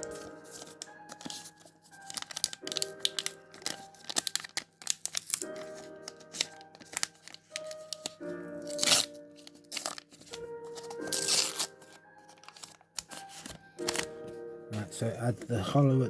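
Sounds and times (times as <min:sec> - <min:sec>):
card pack wrapper tearing: 0:00.0 - 0:14.3
background music: 0:00.0 - 0:16.0.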